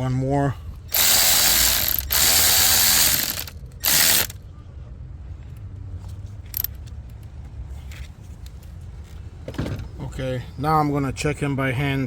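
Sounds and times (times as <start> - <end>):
electric ratchet spinning bolt: 0.9 - 4.4.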